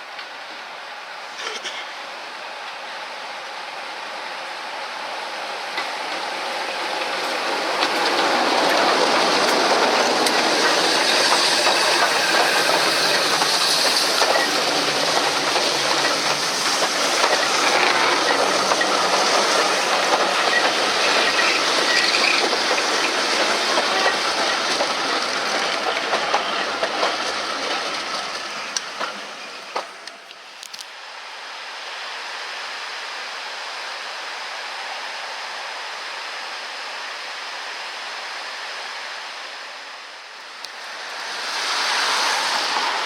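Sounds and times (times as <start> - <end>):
train hiss: 0.0 - 43.0
train wheels rumbling on track: 4.2 - 30.9, 40.6 - 43.0.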